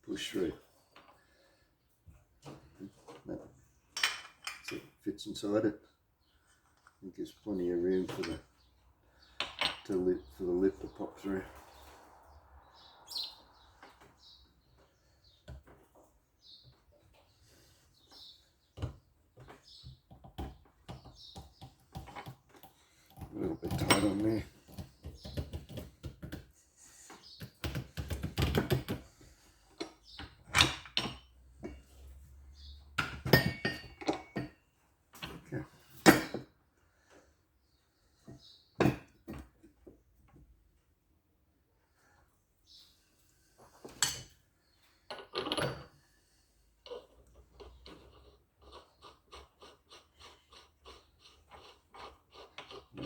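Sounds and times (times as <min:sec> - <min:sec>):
metal parts knocking and clinking: 0:23.2 - 0:24.5, 0:33.0 - 0:34.6.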